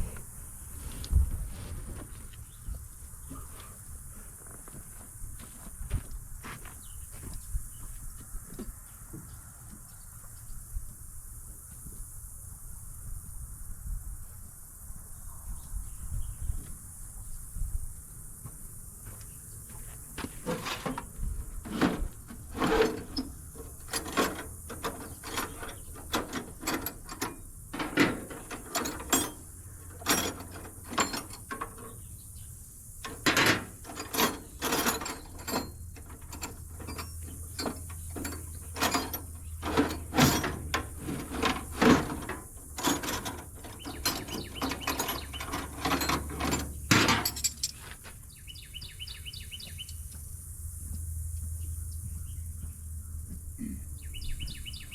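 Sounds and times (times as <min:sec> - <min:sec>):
hand tools clanking on metal: 0:20.2 - 0:32.2, 0:33.0 - 0:48.0.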